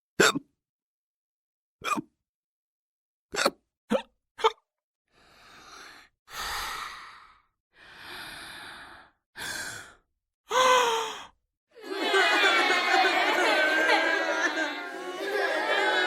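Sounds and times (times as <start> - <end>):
person breathing slowly: 5.1 - 11.4
person sighing: 10.5 - 11.3.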